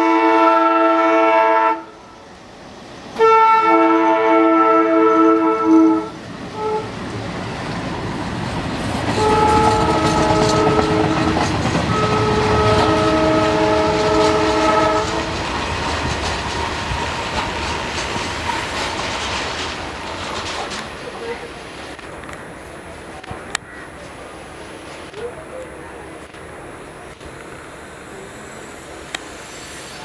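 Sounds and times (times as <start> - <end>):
locomotive horn blasts: 0.0 - 2.0, 3.2 - 6.9, 9.1 - 15.4
train rumble and wheel clatter: 0.0 - 30.0.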